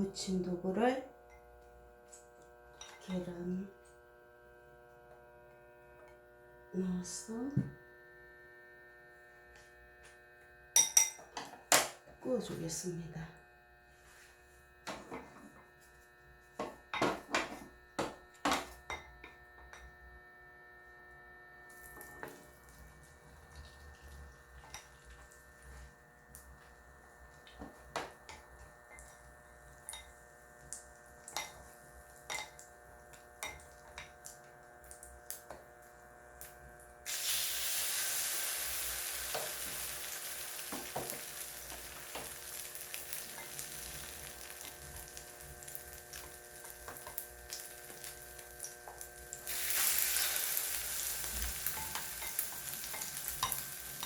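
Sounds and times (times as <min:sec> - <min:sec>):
tofu sizzling in oil: 0:37.0 - 0:54.0.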